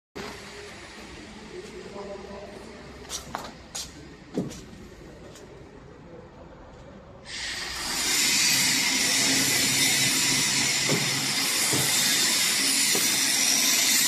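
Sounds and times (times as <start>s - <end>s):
loud steady hiss: 7.3s - 14.0s.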